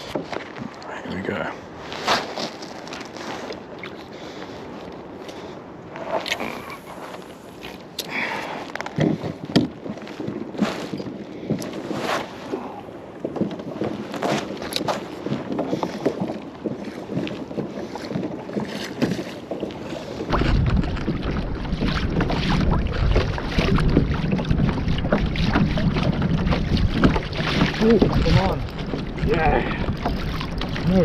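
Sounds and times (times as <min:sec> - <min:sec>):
water around a boat: 0:00.0 - 0:31.0
wind on the microphone: 0:20.0 - 0:31.0.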